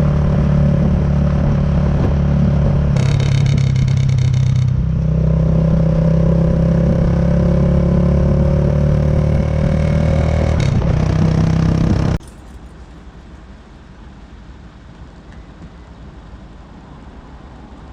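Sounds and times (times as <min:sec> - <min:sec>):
motorcycle engine running: 0:00.0 - 0:12.2.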